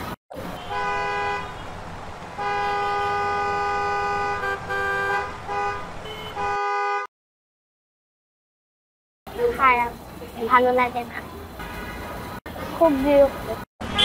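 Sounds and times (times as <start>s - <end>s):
street traffic rumble: 0.0s - 7.1s, 9.3s - 14.0s
vehicle horns honking: 0.4s - 1.8s, 2.4s - 7.1s, 11.6s - 12.1s.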